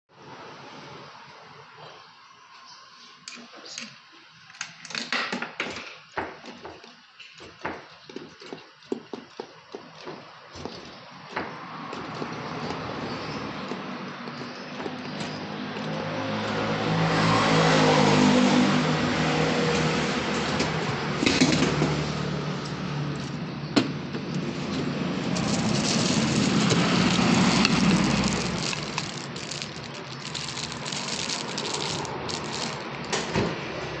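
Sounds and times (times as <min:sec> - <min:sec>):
vehicles passing: 0:10.3 - 0:34.0.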